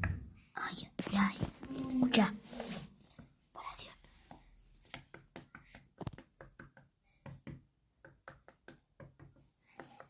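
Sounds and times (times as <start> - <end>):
knocks and taps on a wall: 4.3 - 10.0.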